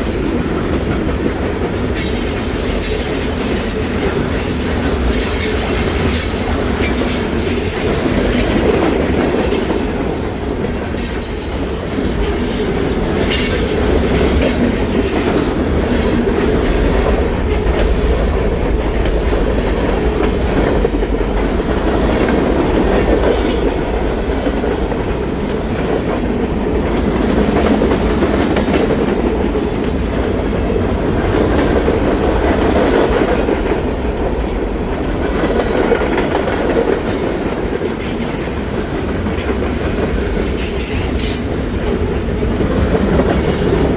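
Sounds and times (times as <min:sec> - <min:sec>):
wheels clicking over rail joints: 0:00.0 - 0:30.2, 0:31.3 - 0:43.9
freight train cars rumbling: 0:00.0 - 0:43.9
faint high squeal: 0:29.6 - 0:31.3.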